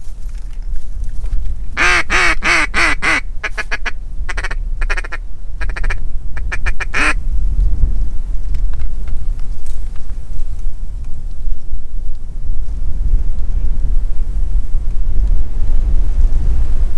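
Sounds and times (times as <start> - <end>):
wind rumble on microphone: 0.0 - 16.9
duck quacking: 1.8 - 7.2.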